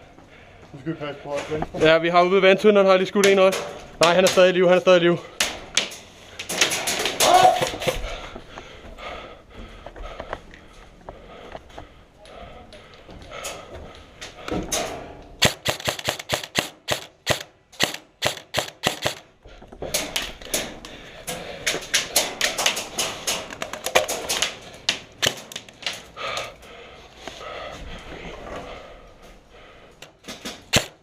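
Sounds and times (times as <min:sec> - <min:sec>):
airsoft guns firing: 0:15.4 - 0:19.3, 0:30.3 - 0:31.0.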